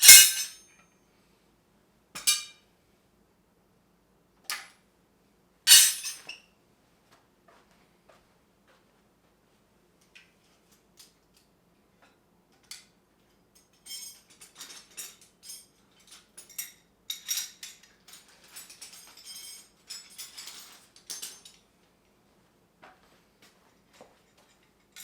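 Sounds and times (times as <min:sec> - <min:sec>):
metal hand tools clinking: 0:00.0 - 0:00.7, 0:05.7 - 0:06.3.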